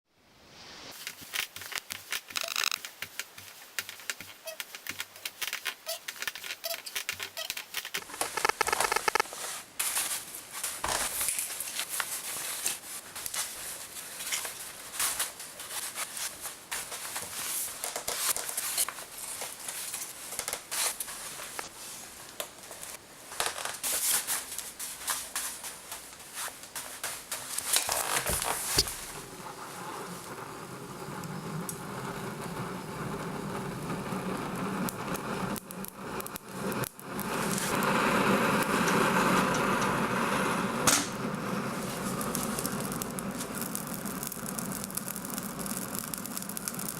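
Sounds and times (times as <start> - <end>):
kindling crackling and rustling: 0.8 - 46.9
fire rushing: 28.3 - 46.9.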